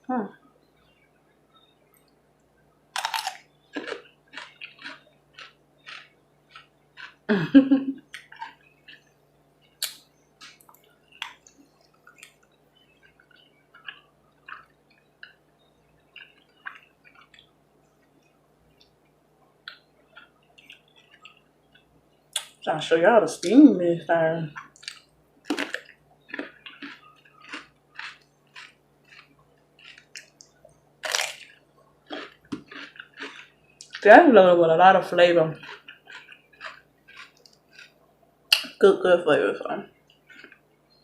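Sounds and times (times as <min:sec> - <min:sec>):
wet chewing and lip-smacking: 0:03.0 - 0:07.3, 0:08.1 - 0:22.6, 0:24.6 - 0:34.0, 0:35.6 - 0:38.7, 0:40.1 - 0:40.6.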